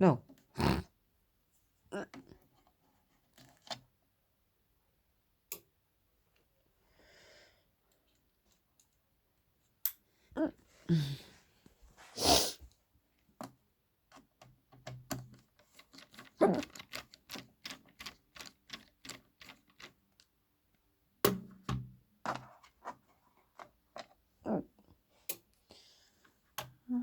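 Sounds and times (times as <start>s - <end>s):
hand tools clicking on plastic: 13.4s - 20.3s.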